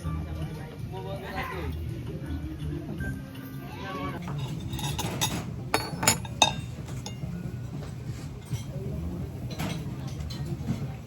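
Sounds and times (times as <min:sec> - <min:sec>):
glass clinks and taps: 0:04.4 - 0:07.2.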